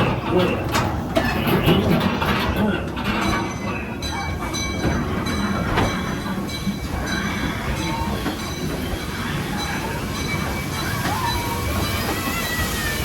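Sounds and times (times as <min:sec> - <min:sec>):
wheels rumbling on rails: 0:00.0 - 0:13.0
high squeals: 0:06.9 - 0:13.0.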